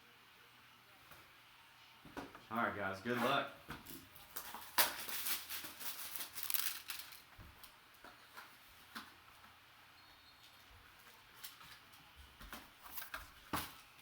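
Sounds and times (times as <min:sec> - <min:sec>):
packaging crinkling and tearing: 0:04.2 - 0:07.3.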